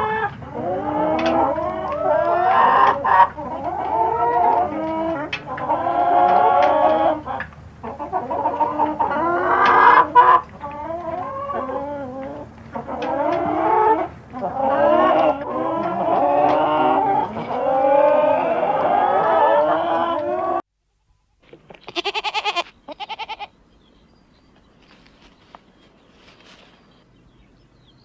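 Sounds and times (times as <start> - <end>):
chickens clucking: 0.0 - 20.6.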